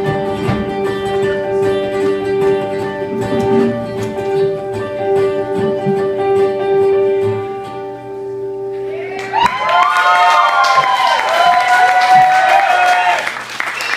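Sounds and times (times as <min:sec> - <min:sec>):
strummed guitars closing chord: 0:00.0 - 0:09.0
audience whooping and cheering: 0:08.9 - 0:13.9.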